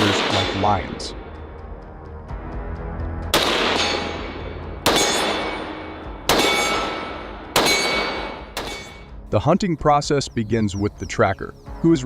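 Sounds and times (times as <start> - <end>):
loud sharp bangs: 0.0 - 0.9, 3.3 - 8.9.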